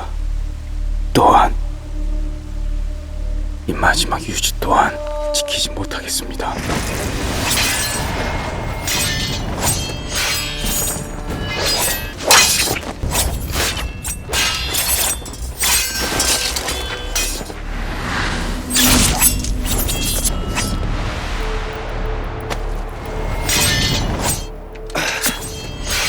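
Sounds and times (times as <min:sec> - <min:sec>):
dramatic background music: 0:00.0 - 0:26.0
swords clashing: 0:07.4 - 0:08.2, 0:08.8 - 0:17.6, 0:18.7 - 0:20.8, 0:23.4 - 0:26.0.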